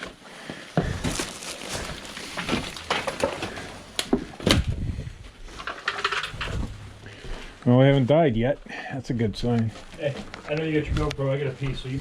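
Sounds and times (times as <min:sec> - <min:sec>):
rustling: 0:00.0 - 0:08.2
objects knocking and clattering: 0:00.8 - 0:04.7, 0:05.5 - 0:07.4.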